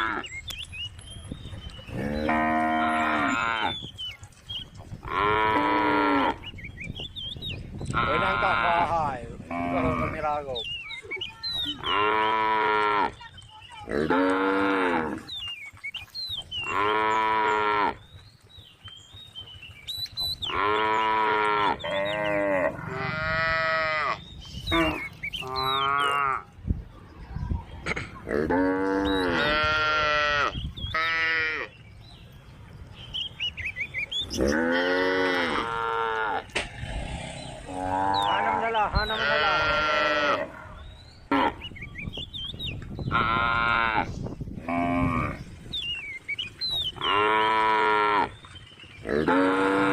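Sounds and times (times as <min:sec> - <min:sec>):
cows mooing: 0:00.0 - 0:00.3, 0:01.9 - 0:03.8, 0:05.0 - 0:06.5, 0:07.9 - 0:10.4, 0:11.7 - 0:13.2, 0:13.8 - 0:15.3, 0:16.6 - 0:18.0, 0:20.5 - 0:26.5, 0:28.2 - 0:31.7, 0:34.3 - 0:41.6, 0:43.1 - 0:45.5, 0:46.9 - 0:48.4, 0:49.0 - 0:49.9.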